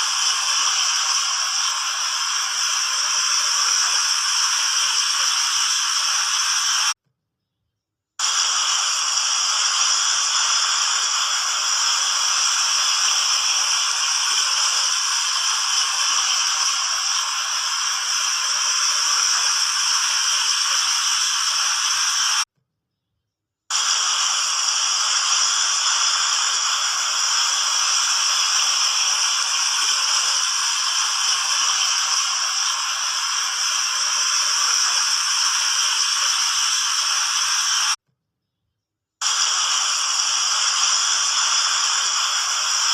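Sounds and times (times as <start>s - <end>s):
fountain water splashing: 9.0s - 22.4s, 23.8s - 38.0s.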